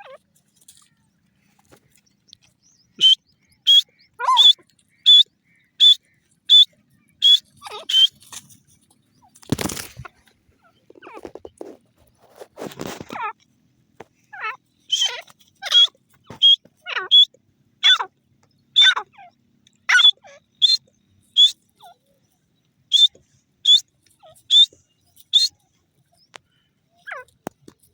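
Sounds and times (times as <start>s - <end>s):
rustle: 0.0s - 2.3s, 4.6s - 17.0s
bird calling sharp repeated notes: 2.6s - 8.4s, 14.3s - 18.1s, 18.7s - 22.0s, 22.9s - 25.6s.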